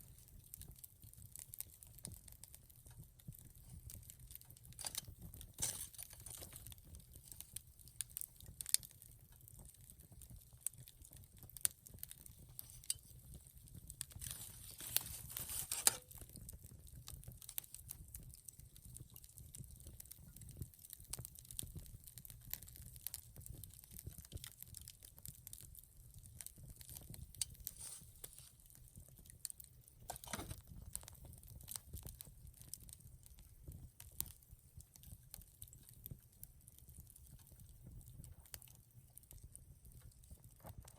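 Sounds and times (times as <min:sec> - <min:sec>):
campfire crackling and popping: 0:00.0 - 0:40.9
low rumble of flames: 0:00.0 - 0:40.9
fire hissing: 0:03.6 - 0:07.7, 0:12.2 - 0:16.2, 0:27.4 - 0:28.6.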